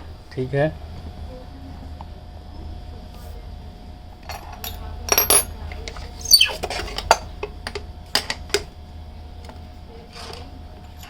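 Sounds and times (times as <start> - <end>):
short falling squeak: 6.2 - 6.7.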